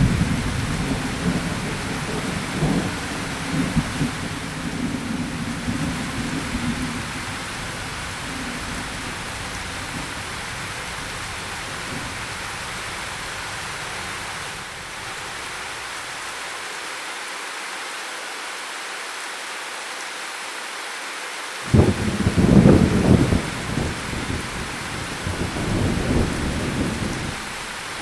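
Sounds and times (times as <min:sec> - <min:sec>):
low rumble of thunder: 0:00.0 - 0:15.4, 0:21.7 - 0:28.0
steady rain falling: 0:00.0 - 0:28.0.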